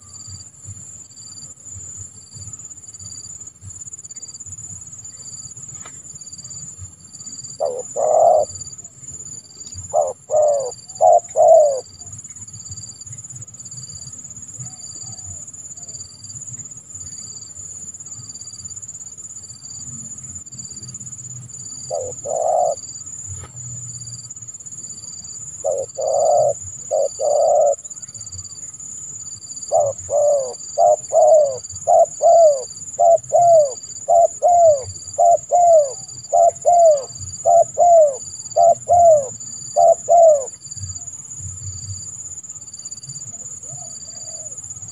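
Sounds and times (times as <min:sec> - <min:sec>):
dove cooing: 0:07.5 - 0:08.8, 0:09.7 - 0:12.1, 0:21.8 - 0:22.9, 0:25.5 - 0:28.1, 0:29.5 - 0:41.1, 0:43.4 - 0:44.9.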